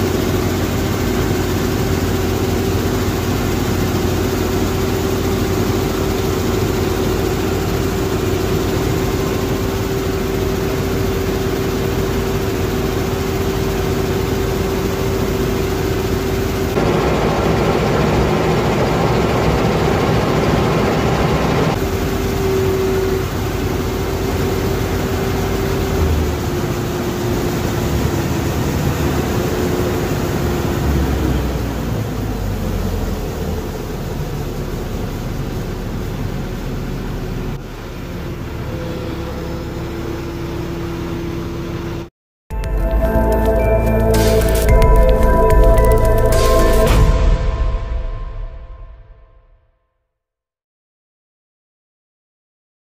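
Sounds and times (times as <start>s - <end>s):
high steady whine: 0.0s - 29.3s, 42.5s - 49.6s
combine harvester engine drone: 0.0s - 42.1s.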